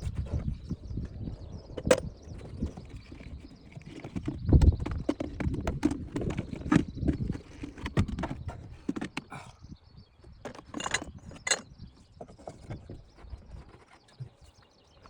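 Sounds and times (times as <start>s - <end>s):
clicks of tools and plastic parts: 10.5s - 11.7s.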